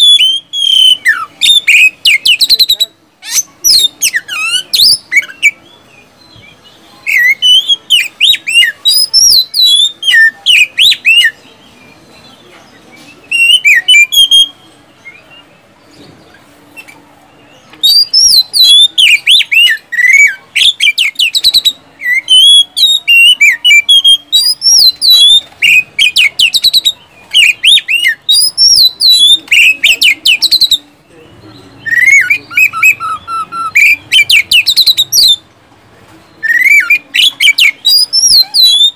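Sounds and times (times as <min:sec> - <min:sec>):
bird singing whistles and chirps: 0:00.0 - 0:12.4, 0:13.0 - 0:15.5, 0:16.8 - 0:35.4, 0:36.3 - 0:38.9.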